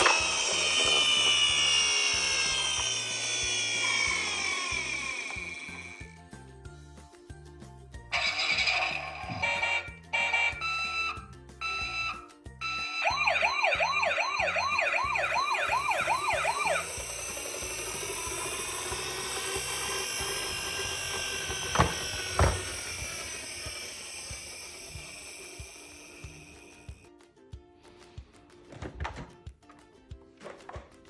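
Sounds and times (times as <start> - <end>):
toy vehicle siren sweeping: 0.0 - 6.1, 8.1 - 27.0
background music: 26.8 - 31.0.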